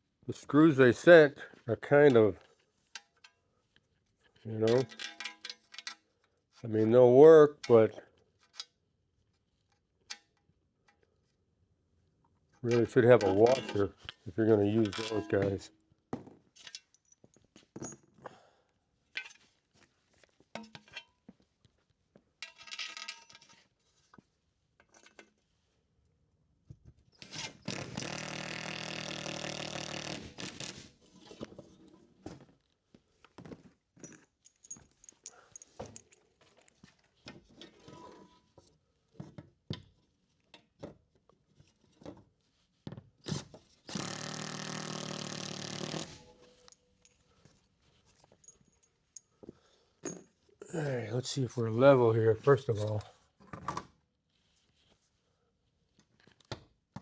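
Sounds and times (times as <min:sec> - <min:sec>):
screws and hardware handled: 0:04.6 - 0:06.0, 0:12.7 - 0:15.6, 0:22.4 - 0:24.2, 0:27.1 - 0:32.6, 0:33.2 - 0:39.2, 0:43.2 - 0:50.4
power drill driving screws: 0:27.2 - 0:31.1, 0:43.3 - 0:46.8.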